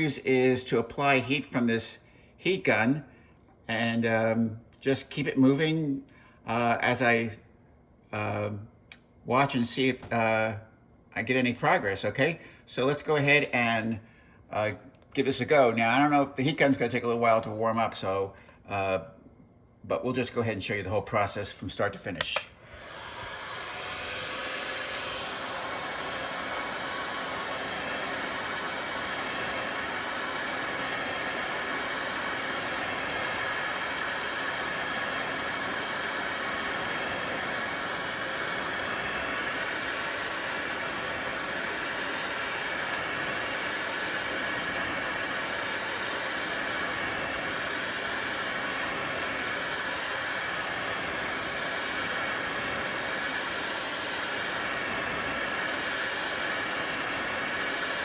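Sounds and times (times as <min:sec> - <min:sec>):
heat gun fan blowing: 0:19.9 - 0:58.0.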